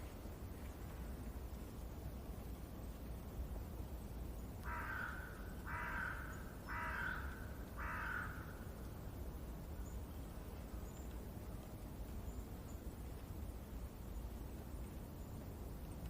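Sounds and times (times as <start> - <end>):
low background hiss: 0.0 - 16.0
crow cawing: 4.6 - 8.7.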